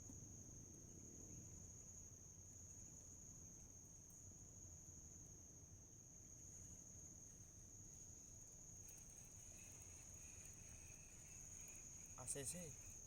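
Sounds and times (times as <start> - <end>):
lower insect chirring: 8.3 - 13.0
high-pitched insect chirring: 8.8 - 13.0.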